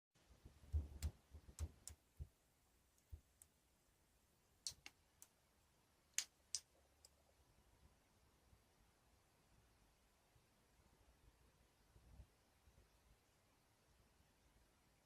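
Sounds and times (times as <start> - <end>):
soft low thumps: 0.5 - 2.3.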